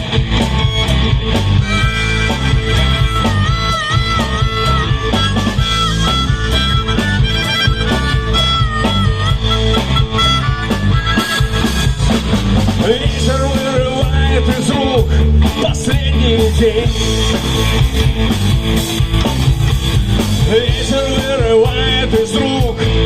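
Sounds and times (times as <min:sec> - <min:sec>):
bending lead melody: 0:00.0 - 0:23.0
rock band playing: 0:00.0 - 0:23.0
person singing: 0:12.8 - 0:17.2, 0:20.4 - 0:23.0.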